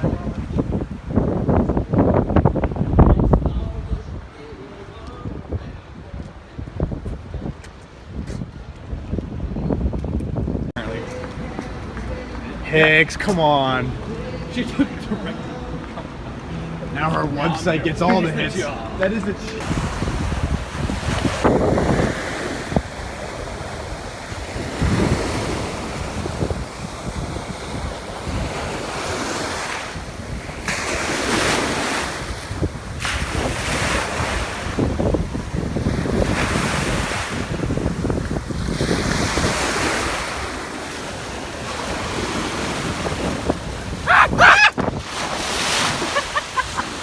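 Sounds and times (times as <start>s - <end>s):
wind buffeting the microphone: 0.0s - 12.3s, 19.4s - 47.0s
ocean surf washing up: 10.8s - 47.0s
high wavering cry: 44.0s - 44.8s.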